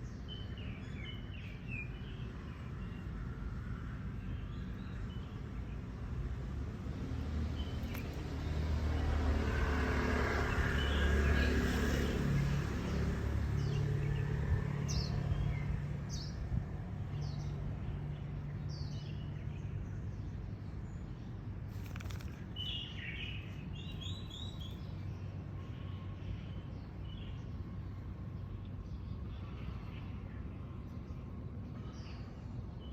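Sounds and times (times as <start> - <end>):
small birds chirping: 0.0 - 9.2, 9.8 - 32.9
outdoor background noise: 0.0 - 32.9
motor vehicle passing: 6.4 - 18.1.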